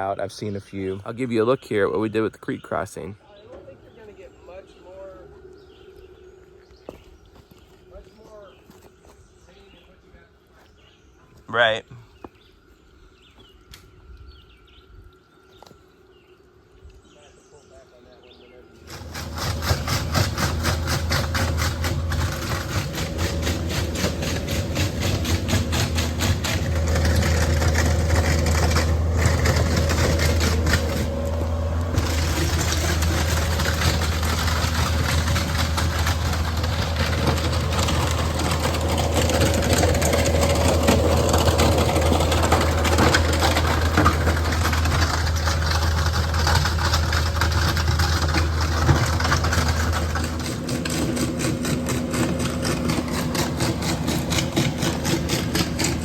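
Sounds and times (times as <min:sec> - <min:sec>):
engine idling: 0:18.8 - 0:56.0.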